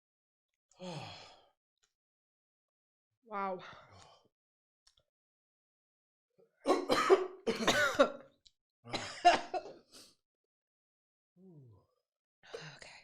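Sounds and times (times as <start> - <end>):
person coughing harshly: 6.6 - 8.3, 8.9 - 9.8.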